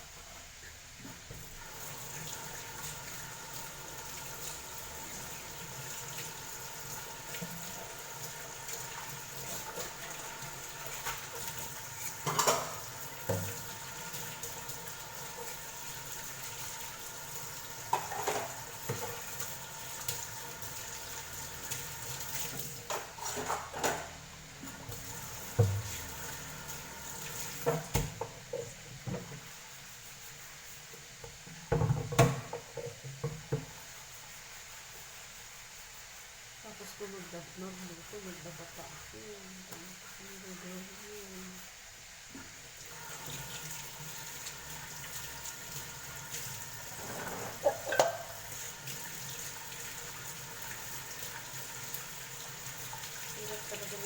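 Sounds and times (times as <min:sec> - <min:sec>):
steady background hiss: 0:00.0 - 0:54.0
pots and utensils clattering: 0:12.1 - 0:13.6, 0:17.8 - 0:19.6, 0:22.7 - 0:25.0, 0:46.8 - 0:48.8.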